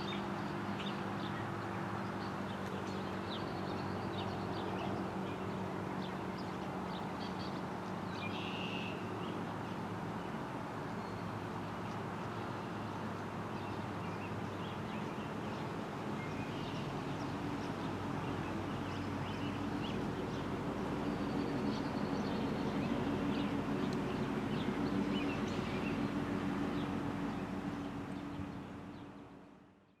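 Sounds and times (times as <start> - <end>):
birds chirping: 11.0 - 29.4.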